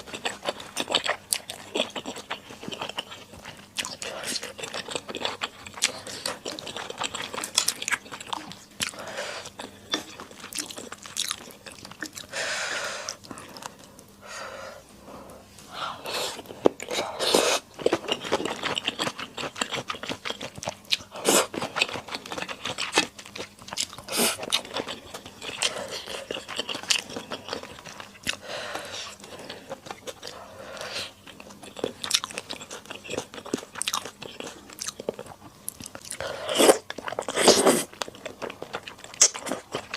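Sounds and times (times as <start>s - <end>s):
person chewing and crunching food: 0.0s - 39.9s.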